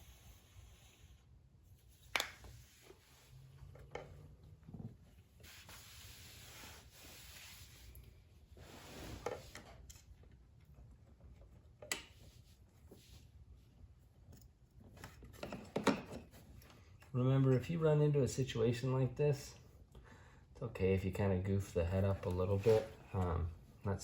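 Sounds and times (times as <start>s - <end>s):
rubbing or scraping: 4.8s - 9.7s, 21.9s - 23.1s.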